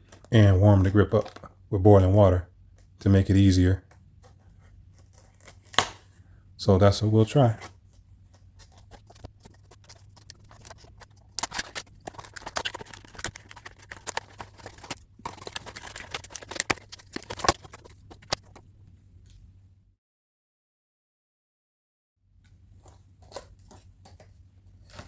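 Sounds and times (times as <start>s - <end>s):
plastic packaging crackling: 7.4s - 18.6s.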